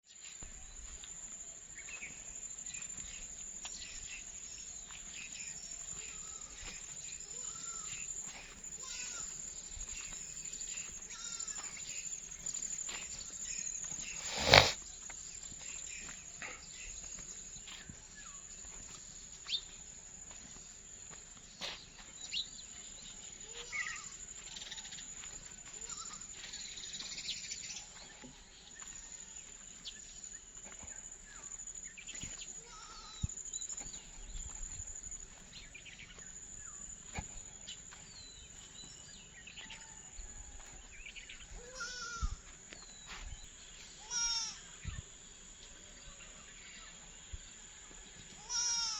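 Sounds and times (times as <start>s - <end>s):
animal calls and chirps: 5.2s - 14.8s, 23.4s - 25.2s.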